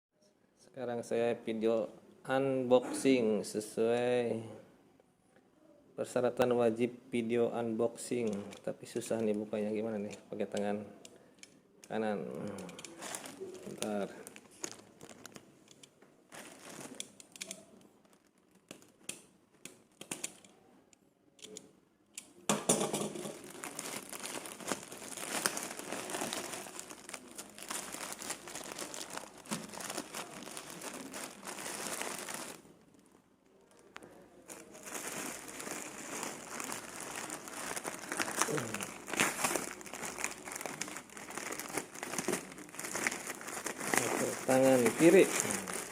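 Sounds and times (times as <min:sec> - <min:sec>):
plastic bag crinkling and tearing: 0:12.6 - 0:20.3, 0:22.8 - 0:33.1, 0:33.7 - 0:45.9.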